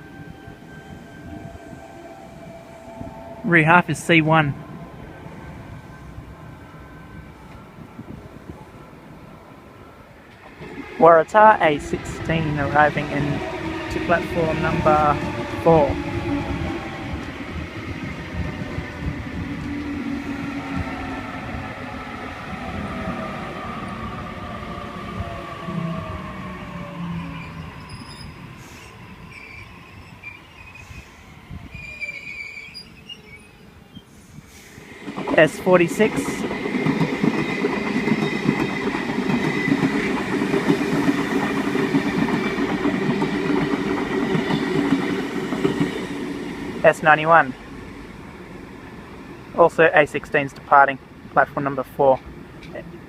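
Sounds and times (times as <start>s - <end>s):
train rumble: 0.0s - 29.4s, 34.0s - 53.0s.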